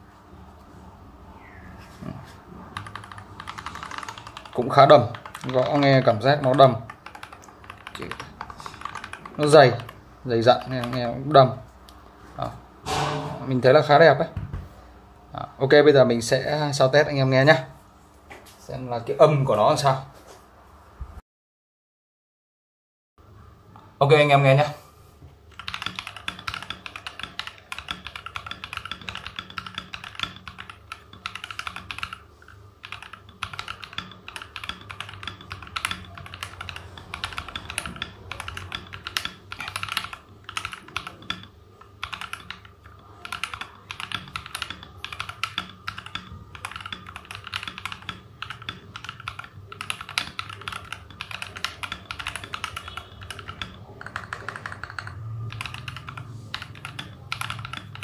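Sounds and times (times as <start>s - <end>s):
mechanical keyboard typing: 2.6s - 11.5s, 25.5s - 58.0s.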